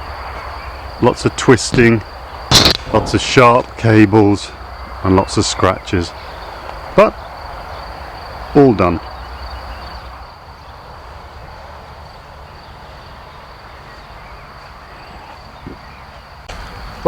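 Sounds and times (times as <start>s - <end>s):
crickets trilling: 0.0s - 17.0s
low even hiss: 0.2s - 7.2s.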